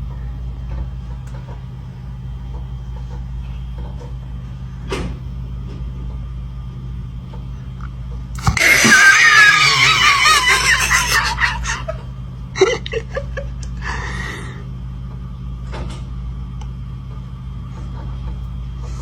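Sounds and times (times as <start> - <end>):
steady low hum: 0.0 - 19.0
shrill high-pitched laughter: 8.4 - 13.5.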